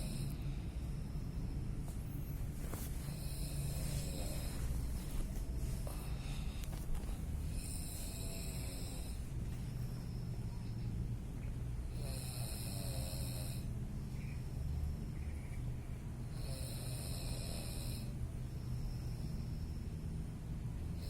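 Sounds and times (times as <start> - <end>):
person snoring: 3.1 - 5.0, 7.4 - 9.3, 11.9 - 13.8, 16.3 - 18.1.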